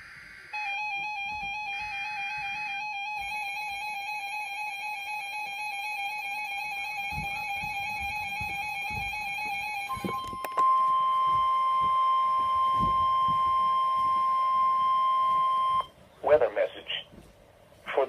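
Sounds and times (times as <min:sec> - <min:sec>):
steady warning alarm tone: 0:00.0 - 0:15.9
warbling electronic alert tone: 0:00.4 - 0:15.8.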